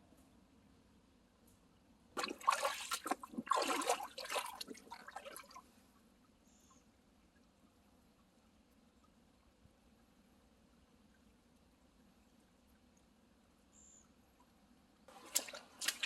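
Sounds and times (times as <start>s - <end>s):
water splashing and streaming: 2.2s - 5.7s, 15.1s - 16.0s.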